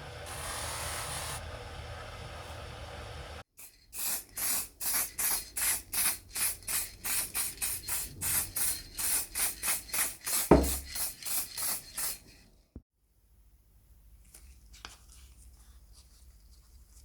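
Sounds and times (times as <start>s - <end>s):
short hissing strokes: 0.3s - 1.5s, 3.6s - 12.4s
heavy thump: 10.5s - 10.8s.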